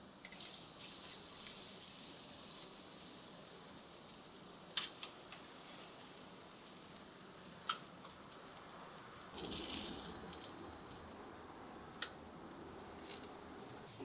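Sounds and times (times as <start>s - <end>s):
meat sizzling on charcoal: 0.0s - 13.9s.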